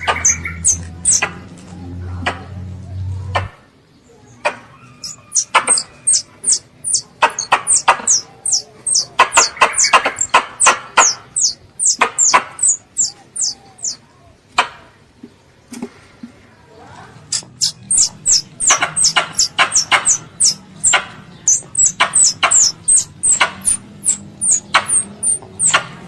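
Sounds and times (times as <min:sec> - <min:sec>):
squirrel chirping: 0:00.0 - 0:01.5, 0:04.7 - 0:14.0, 0:17.3 - 0:26.0.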